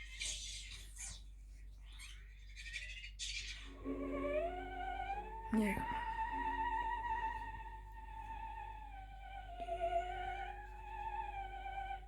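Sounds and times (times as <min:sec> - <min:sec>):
steady low hum: 0:00.0 - 0:12.0
high wavering held note: 0:03.9 - 0:12.0.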